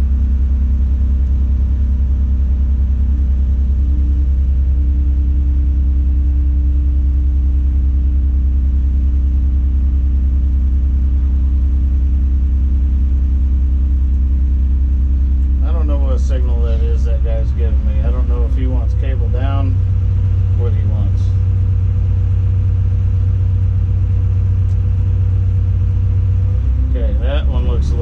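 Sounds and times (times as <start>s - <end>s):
diesel engine droning: 0.0s - 28.0s
steady higher hum: 0.0s - 28.0s.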